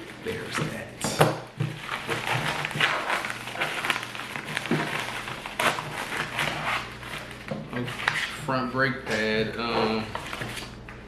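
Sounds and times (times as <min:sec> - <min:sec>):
packaging crinkling: 0:01.8 - 0:08.1.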